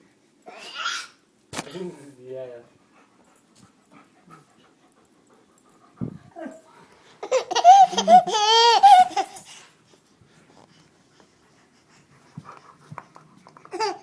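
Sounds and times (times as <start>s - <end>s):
baby laughing: 7.2s - 9.6s, 13.7s - 14.0s.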